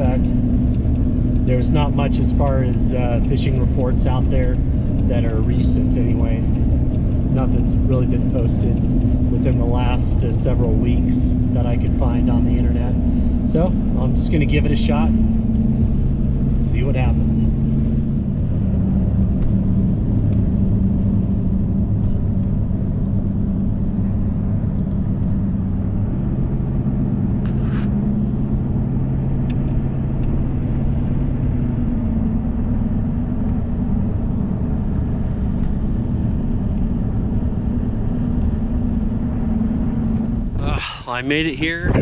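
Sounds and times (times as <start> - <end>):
car engine and road rumble: 0.0 - 42.0
click inside car: 29.4 - 30.6.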